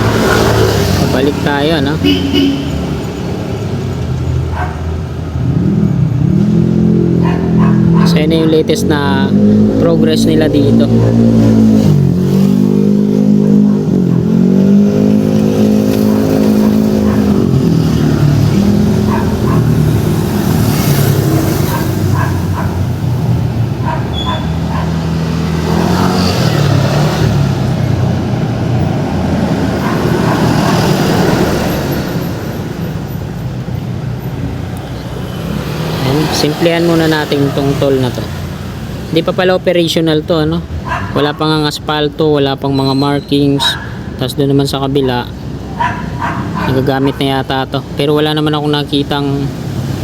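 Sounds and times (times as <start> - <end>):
vehicle engine revving: 0.0 - 39.7
road and wind noise: 0.0 - 50.0.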